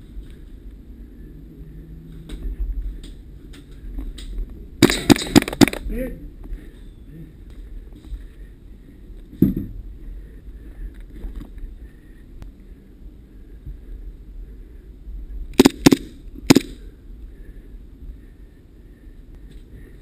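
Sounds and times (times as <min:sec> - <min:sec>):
low steady rumble: 0:00.0 - 0:20.0
airsoft gun shots: 0:04.8 - 0:05.8, 0:15.6 - 0:16.8.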